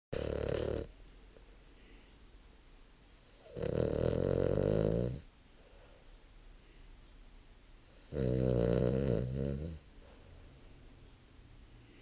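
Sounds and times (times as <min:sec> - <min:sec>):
low-pitched snoring: 0:00.2 - 0:00.9, 0:03.3 - 0:05.3, 0:07.9 - 0:09.8.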